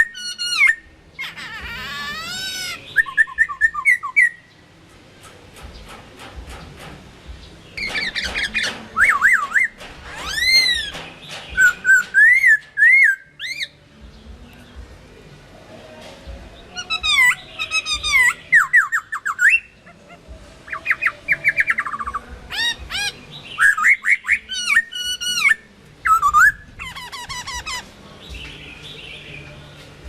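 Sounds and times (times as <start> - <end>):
bird singing whistled phrases: 0.0 - 4.5, 11.5 - 13.8, 16.8 - 19.8, 20.7 - 27.8
faint clicks: 4.9 - 7.0.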